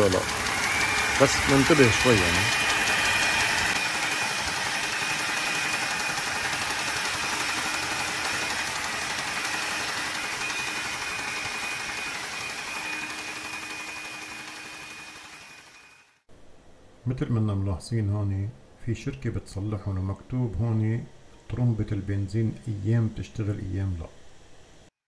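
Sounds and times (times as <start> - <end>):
hot-air gun hissing and whining: 0.0 - 16.3.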